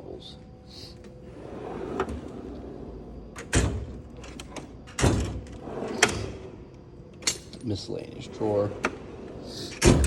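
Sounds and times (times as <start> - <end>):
steel drawers opening and shutting: 1.3 - 6.6, 8.3 - 10.0.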